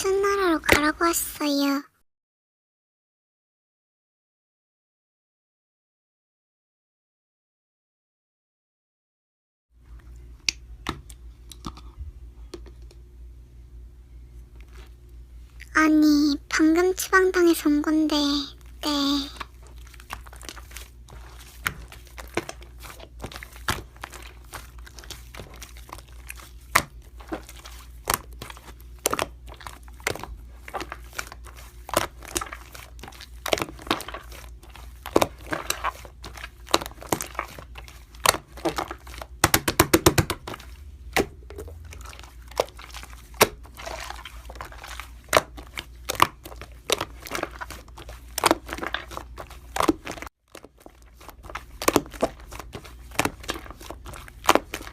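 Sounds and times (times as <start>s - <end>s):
slime squished by hand: 16.9s - 54.9s.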